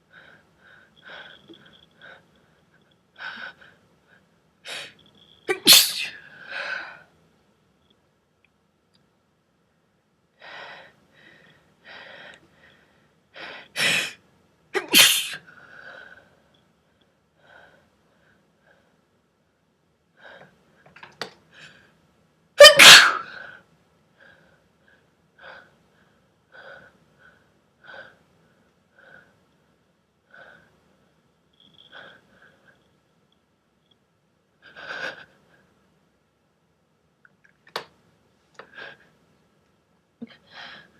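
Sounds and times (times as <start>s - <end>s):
person sneezing: 5.5s - 6.2s, 14.8s - 15.4s, 22.6s - 23.4s.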